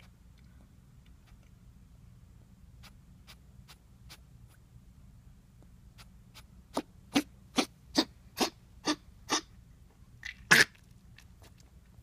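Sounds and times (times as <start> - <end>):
puppy coughing: 6.7 - 9.5, 10.5 - 10.8.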